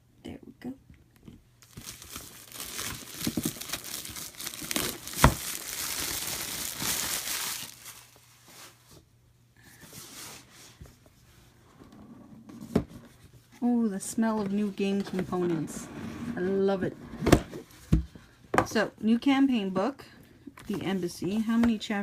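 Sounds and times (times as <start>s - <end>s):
packaging crinkling and tearing: 1.6s - 8.7s.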